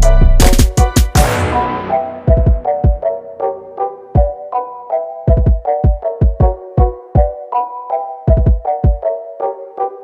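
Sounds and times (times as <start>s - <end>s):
punchy kick drum beat: 0.0s - 1.6s, 2.3s - 3.0s, 5.3s - 7.3s, 8.3s - 9.0s
synth chords: 0.0s - 7.6s.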